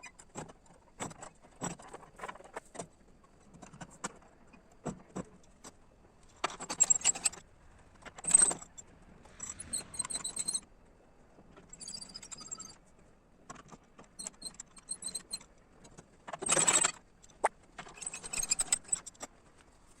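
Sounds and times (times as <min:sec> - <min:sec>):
metal parts jangling and clattering: 0:08.1 - 0:08.6, 0:16.3 - 0:17.0, 0:17.8 - 0:19.2.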